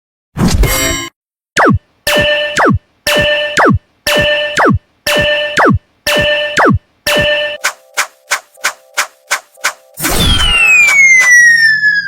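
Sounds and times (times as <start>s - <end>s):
falling pew sweep: 7.6s - 11.8s.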